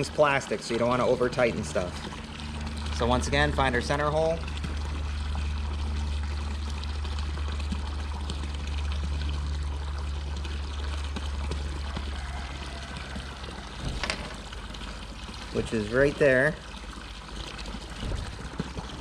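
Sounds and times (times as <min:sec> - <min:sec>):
low hum: 0:00.0 - 0:19.0
water pouring into pool: 0:00.0 - 0:19.0.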